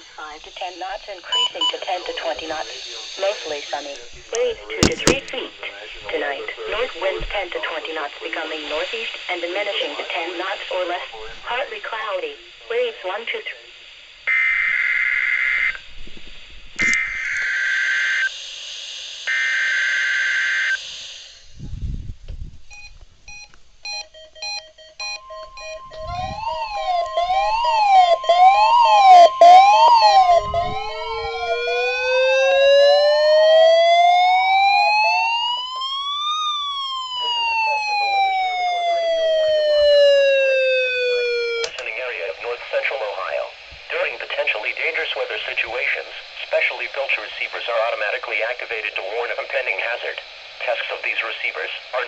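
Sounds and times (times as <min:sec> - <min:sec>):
receiver beeping: 0:00.2 - 0:05.8, 0:22.7 - 0:43.0
up-and-down yelp alarm: 0:14.3 - 0:15.8, 0:16.9 - 0:18.3, 0:19.3 - 0:20.8, 0:22.7 - 0:41.8
buzzing data tones: 0:22.7 - 0:36.5
warning alarm tone: 0:22.7 - 0:41.8
rising and falling siren tone: 0:23.9 - 0:41.7.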